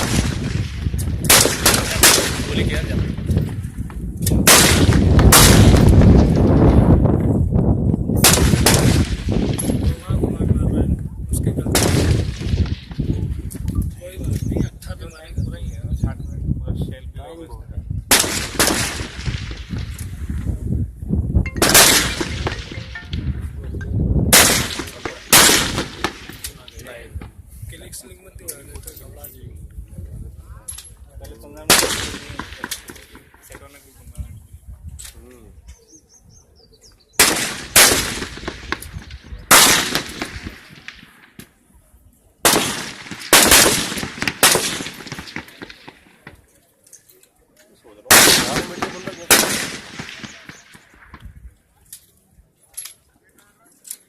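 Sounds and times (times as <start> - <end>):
rifle shots with echo: 0.0 - 3.5, 4.2 - 6.9, 8.2 - 10.2, 11.6 - 13.2, 18.1 - 20.0, 21.6 - 23.4, 24.3 - 27.0, 31.6 - 33.8, 37.2 - 41.4, 42.4 - 46.4, 48.0 - 51.2.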